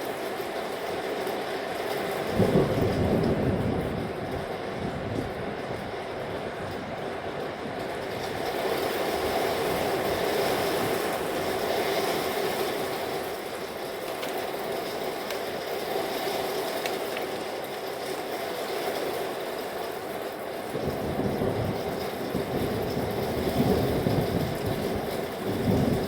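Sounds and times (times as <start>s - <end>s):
thunderstorm rumble: 2.2s - 16.2s, 20.6s - 26.0s.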